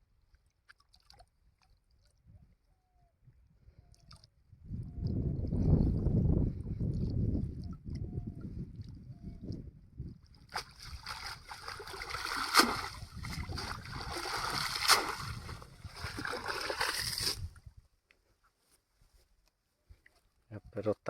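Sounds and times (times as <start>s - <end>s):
water splashing and sloshing: 0.3s - 2.2s, 10.2s - 17.6s.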